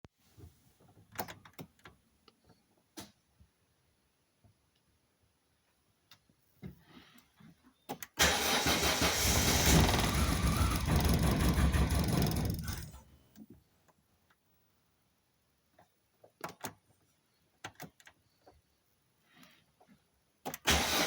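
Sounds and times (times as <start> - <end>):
car engine cranking on starter: 8.2 - 13.0, 20.6 - 21.0.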